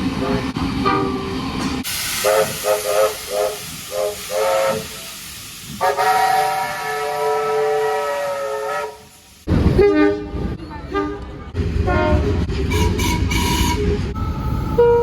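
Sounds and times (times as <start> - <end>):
locomotive horn: 5.8 - 9.1, 9.7 - 15.0.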